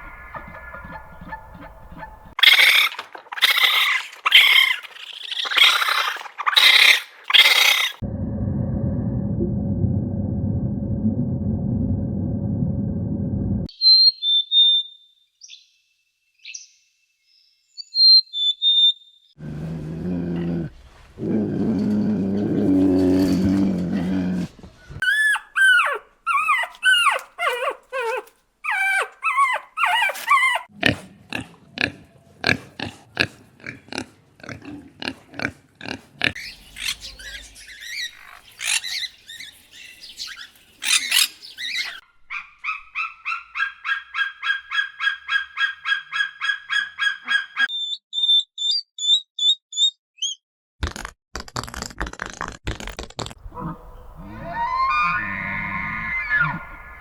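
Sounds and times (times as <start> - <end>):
falling pitched animal calls: 53.5 - 57.0.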